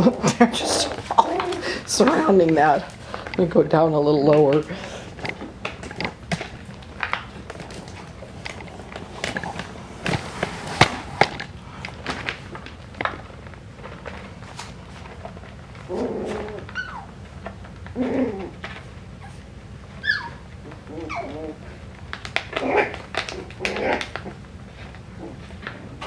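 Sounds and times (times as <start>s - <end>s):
puppies scuffling with clicks: 0.0s - 26.0s
puppy whines and squeaks: 15.8s - 21.8s.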